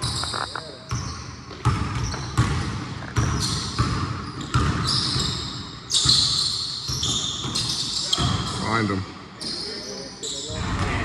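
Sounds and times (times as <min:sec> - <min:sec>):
basketball bouncing on gym floor: 0:00.9 - 0:08.6.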